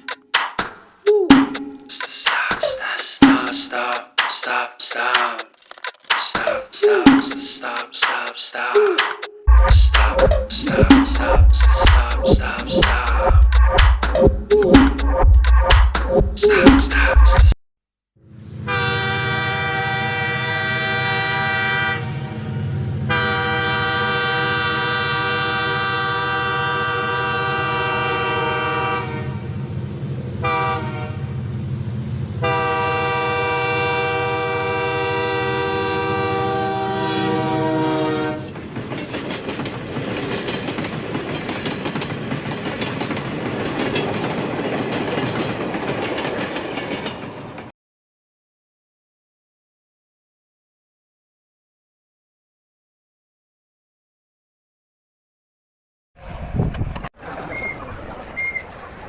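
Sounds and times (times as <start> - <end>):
train rumbling over track: 9.5 - 17.6, 18.4 - 47.7
locomotive horn blasts: 18.5 - 29.6, 30.4 - 31.3, 32.4 - 38.5.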